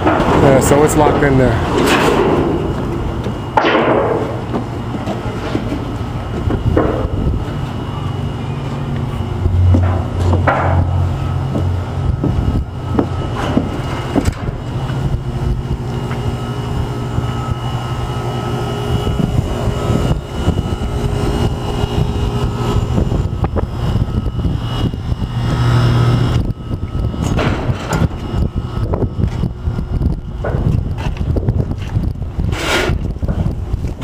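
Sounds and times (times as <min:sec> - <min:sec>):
engine running steadily: 0:00.0 - 0:34.0
knocks and clatter: 0:09.6 - 0:14.6.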